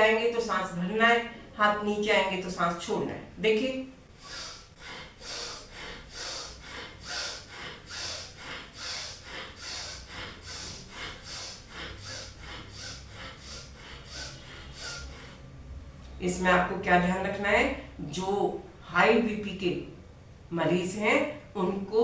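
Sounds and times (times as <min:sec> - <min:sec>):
woman forceful nasal breathing: 0:04.1 - 0:15.6.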